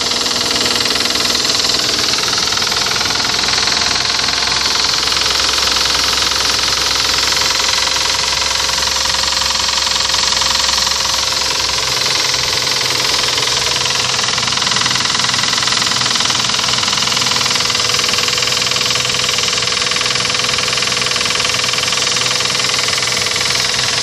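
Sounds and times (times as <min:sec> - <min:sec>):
engine running with rapid knock: 0:00.0 - 0:24.0.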